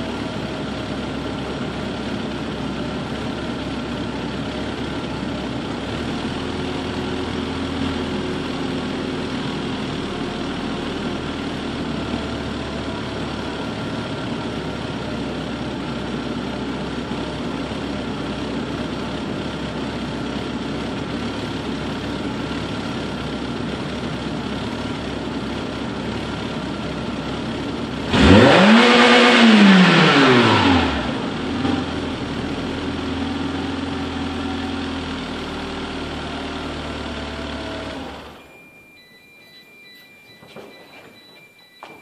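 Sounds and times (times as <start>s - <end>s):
car engine idling and revving: 0.0s - 40.4s.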